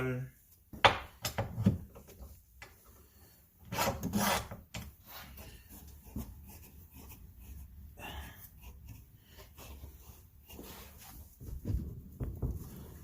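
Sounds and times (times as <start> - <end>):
steel rod scraping in metal hole: 3.6 - 4.9.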